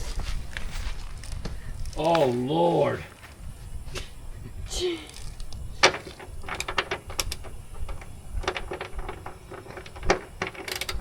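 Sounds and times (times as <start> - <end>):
ratchet wrench clicking: 6.5 - 11.0.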